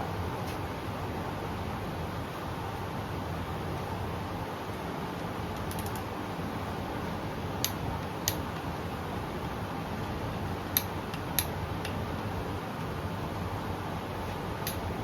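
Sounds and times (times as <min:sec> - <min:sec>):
steady background hum: 0:00.0 - 0:15.0.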